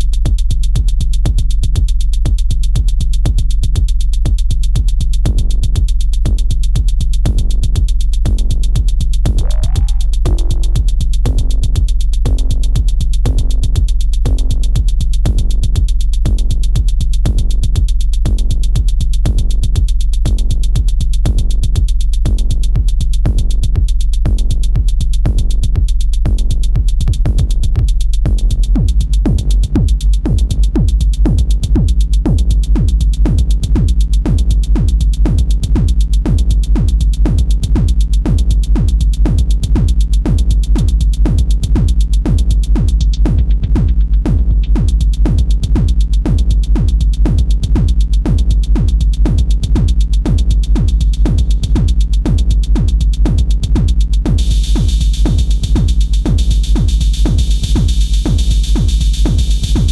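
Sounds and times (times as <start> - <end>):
electronic dance music: 9.4 - 10.9, 42.5 - 59.9.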